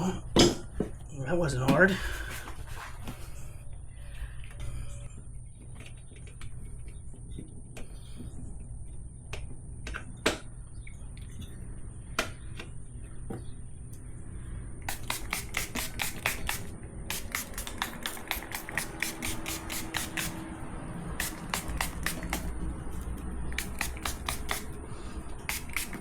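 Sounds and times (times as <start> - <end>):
spray bottle trigger clicks: 14.9 - 20.4, 21.2 - 22.6, 23.5 - 24.8, 25.4 - 26.0
spray bottle squirting: 14.9 - 26.0.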